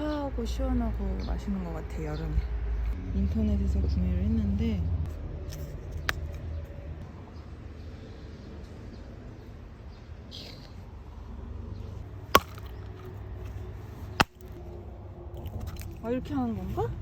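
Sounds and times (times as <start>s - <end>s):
axe striking a log: 12.3s - 13.1s, 14.1s - 14.6s.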